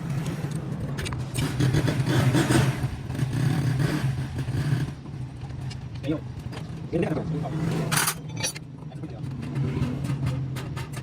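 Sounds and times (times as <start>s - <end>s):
metallic clicks and clinks: 7.9s - 8.7s.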